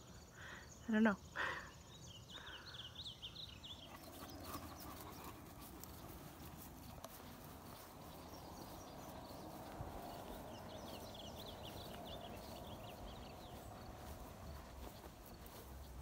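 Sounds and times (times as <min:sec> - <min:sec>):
small bird chirping: 0:01.7 - 0:16.0
low wind rumble: 0:03.6 - 0:16.0.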